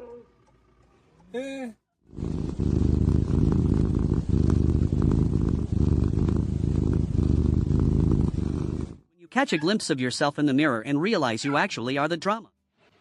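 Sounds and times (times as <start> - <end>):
cat purring loudly: 2.1 - 9.0.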